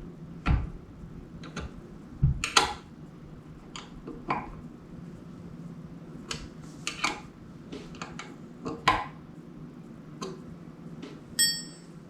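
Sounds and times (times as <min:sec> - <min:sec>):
short metallic ring: 0:11.4 - 0:11.9.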